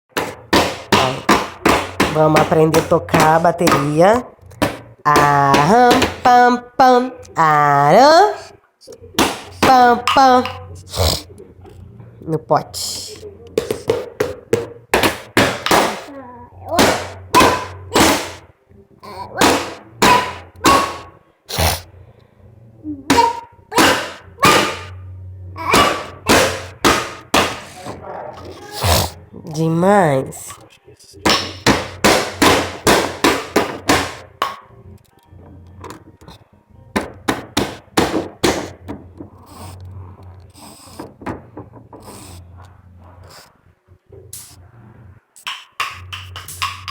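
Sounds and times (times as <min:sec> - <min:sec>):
container beaten as a drum: 0:00.1 - 0:06.3, 0:45.4 - 0:46.9.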